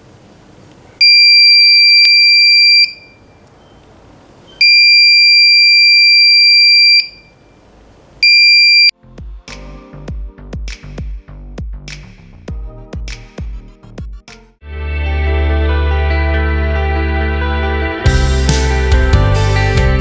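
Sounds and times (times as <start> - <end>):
high-pitched alarm buzzer: 8.2 - 8.9.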